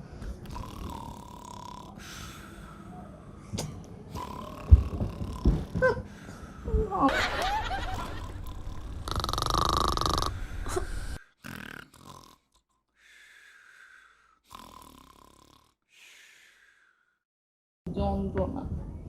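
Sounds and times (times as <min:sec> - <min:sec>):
person snoring: 0:00.4 - 0:03.0, 0:04.1 - 0:05.8, 0:07.9 - 0:12.6, 0:14.3 - 0:15.8.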